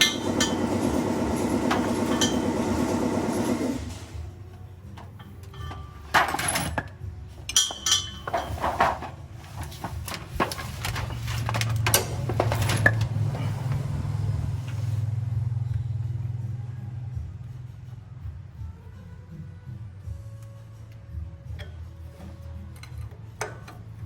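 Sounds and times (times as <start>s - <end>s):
metal tools clinking: 5.0s - 13.6s.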